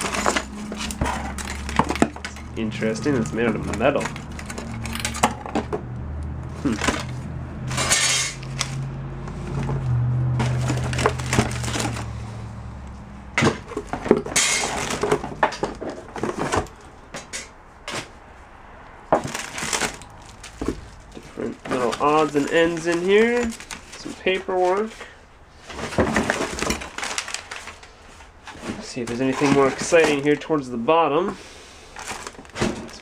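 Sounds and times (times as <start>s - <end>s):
metal pieces clinking in a box: 0.0s - 5.6s, 7.7s - 8.5s.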